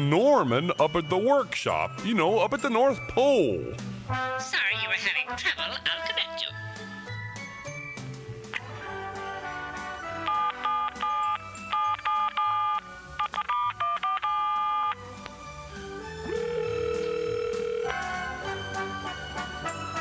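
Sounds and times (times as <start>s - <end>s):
background music: 0.0s - 20.0s
telephone ringing tone: 10.2s - 15.0s, 16.1s - 18.4s
touch-tone dialing beeps: 10.2s - 15.0s, 16.3s - 17.9s.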